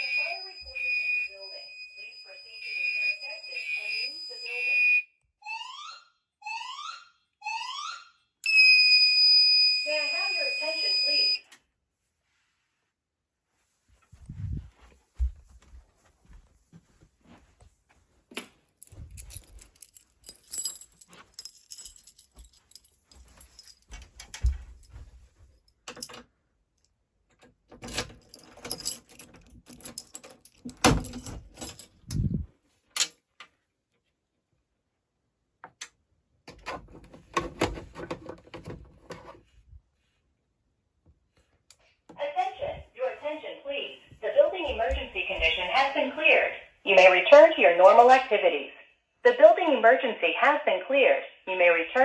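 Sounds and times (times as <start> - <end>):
keys jangling and rattling: 18.3 - 26.3, 27.8 - 32.4.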